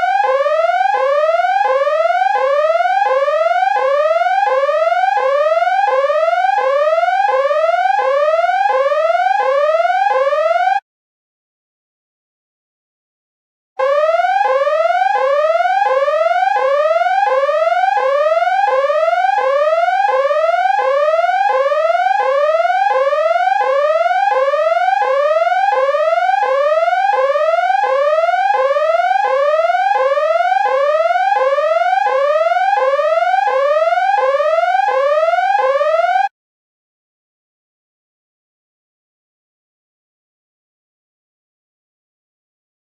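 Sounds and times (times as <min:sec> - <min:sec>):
electronic siren whooping: 0:00.0 - 0:10.8, 0:13.8 - 0:36.3.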